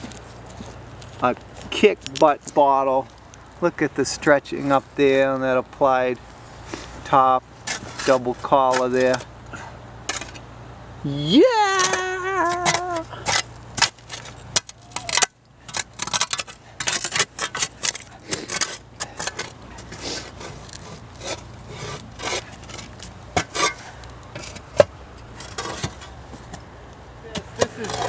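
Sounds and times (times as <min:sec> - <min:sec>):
digging scraping through dirt: 0:06.3 - 0:10.5, 0:11.4 - 0:26.6, 0:27.3 - 0:28.0.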